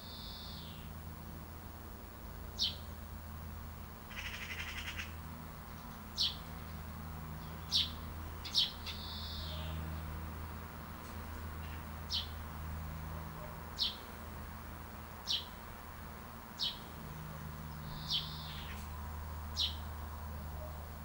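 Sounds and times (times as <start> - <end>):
small birds chirping: 0.0 - 0.9, 2.6 - 3.0, 4.1 - 10.2, 11.6 - 12.4, 13.4 - 14.2, 15.0 - 15.7, 16.5 - 19.9
steady low hum: 0.0 - 21.0
buzzy bird trill: 4.1 - 5.2, 7.4 - 9.8, 16.6 - 18.8.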